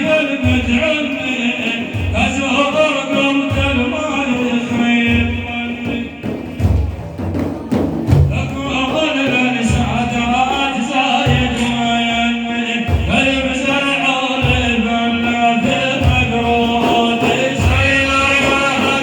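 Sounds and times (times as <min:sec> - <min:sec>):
drum beating slow pulse: 0:00.4 - 0:19.0
person singing: 0:08.3 - 0:19.0.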